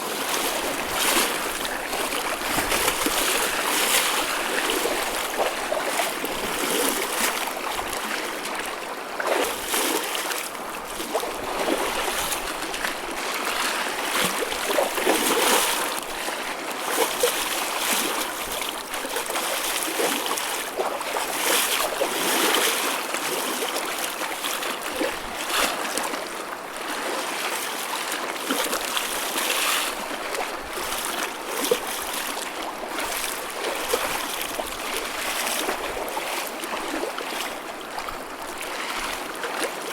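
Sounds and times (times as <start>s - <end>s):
ocean waves splashing: 0.0s - 23.0s.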